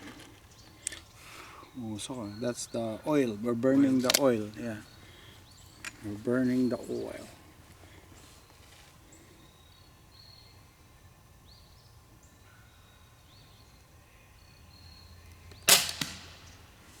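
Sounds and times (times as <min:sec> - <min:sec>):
air pistol firing: 0:15.6 - 0:16.7.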